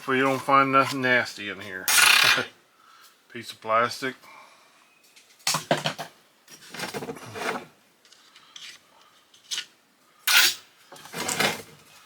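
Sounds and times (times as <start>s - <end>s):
metal parts clinking and scraping: 1.9s - 2.5s, 10.3s - 11.6s.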